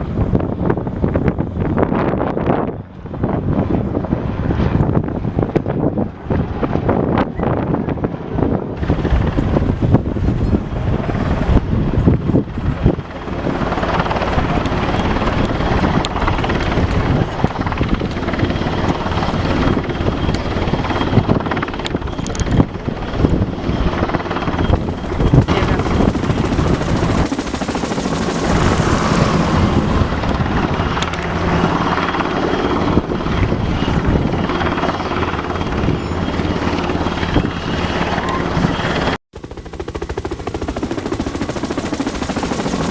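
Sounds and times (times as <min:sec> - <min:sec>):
aircraft engine and propeller noise: 0:00.0 - 0:42.9
wind buffeting microphone: 0:00.0 - 0:42.9.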